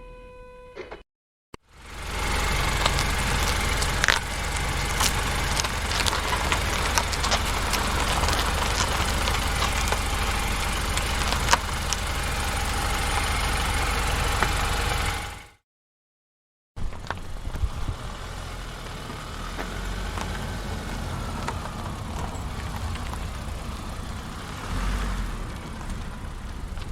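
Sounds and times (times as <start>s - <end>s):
car engine running: 1.7s - 15.6s, 16.8s - 26.9s
small clicks and ticks: 2.0s - 13.5s.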